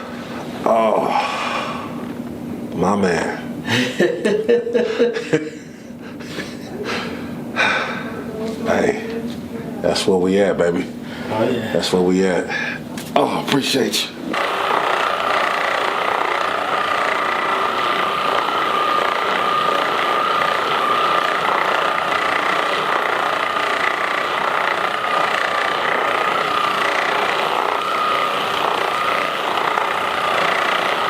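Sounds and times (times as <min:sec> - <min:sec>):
massage gun motor whining: 0:14.3 - 0:31.0.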